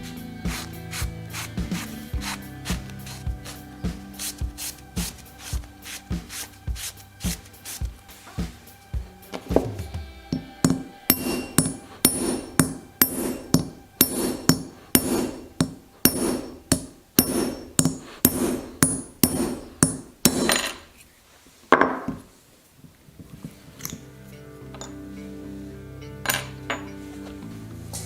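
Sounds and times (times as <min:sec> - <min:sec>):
scraping hammer strike: 0:09.4 - 0:21.0
hammer striking metal: 0:10.3 - 0:20.9.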